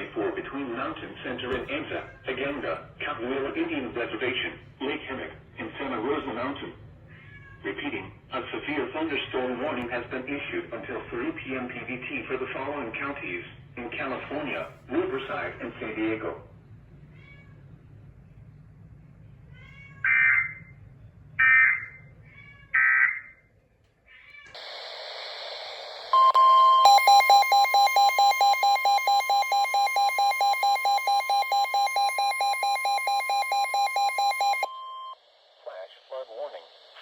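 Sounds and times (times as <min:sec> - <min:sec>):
pulsing electronic attention tone: 0:26.1 - 0:35.2
screechy digital data bursts: 0:26.9 - 0:34.7.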